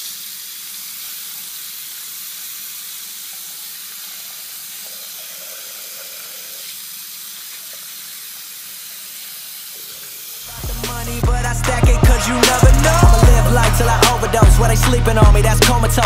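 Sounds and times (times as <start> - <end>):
faucet water running into sink: 0.0 - 11.3.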